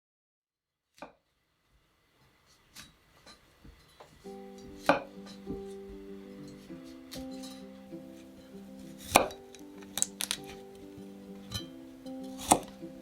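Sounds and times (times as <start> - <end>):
soft background music: 3.6 - 13.0.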